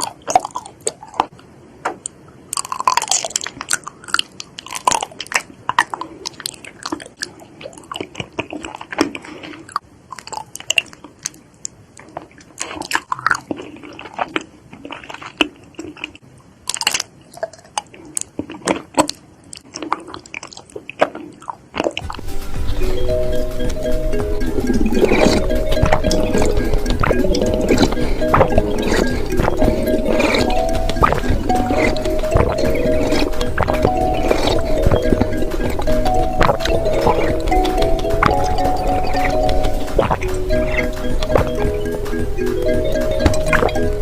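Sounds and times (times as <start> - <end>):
crunchy eating and chewing: 0.0 - 1.4, 2.0 - 44.0
music: 22.0 - 44.0.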